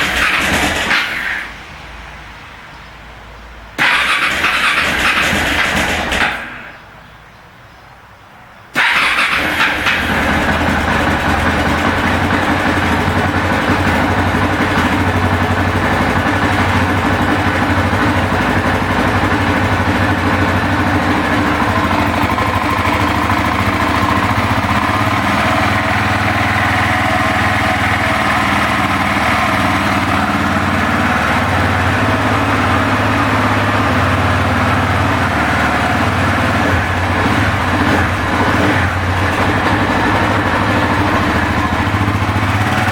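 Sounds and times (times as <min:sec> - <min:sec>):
motorcycle engine idling: 0:08.8 - 0:42.9.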